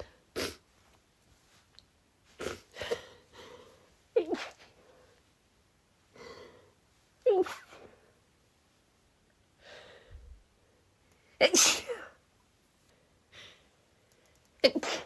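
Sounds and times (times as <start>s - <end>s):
woman sneezing: 11.4s - 12.2s, 14.6s - 15.0s.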